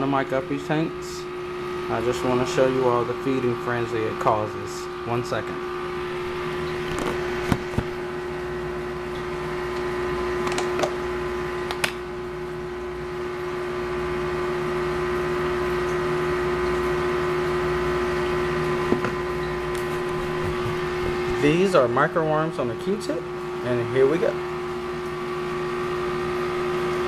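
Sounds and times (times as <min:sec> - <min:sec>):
small motor humming: 0:01.2 - 0:08.7, 0:17.6 - 0:21.9.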